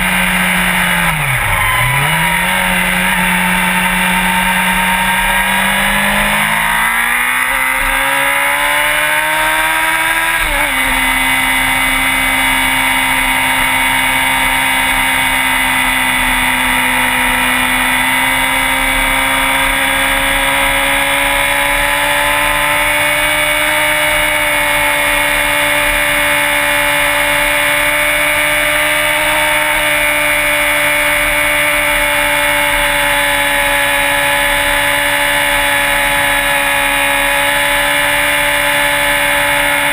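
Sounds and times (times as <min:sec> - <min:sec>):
sport bike engine revving: 0:00.0 - 0:39.9.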